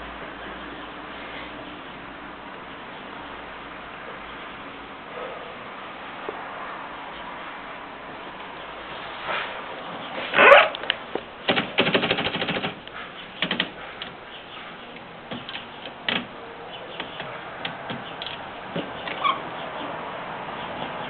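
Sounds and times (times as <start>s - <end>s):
typewriter keys clacking: 11.5s - 12.8s, 13.4s - 14.1s.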